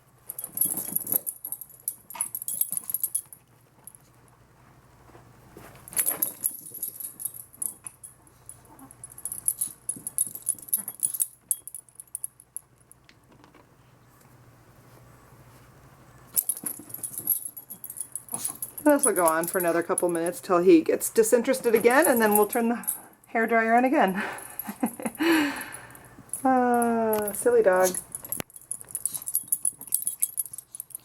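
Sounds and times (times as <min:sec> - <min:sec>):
dog playing with jingling ball: 0:00.3 - 0:04.1, 0:05.6 - 0:12.6, 0:16.3 - 0:20.6, 0:21.2 - 0:23.7, 0:24.4 - 0:31.0.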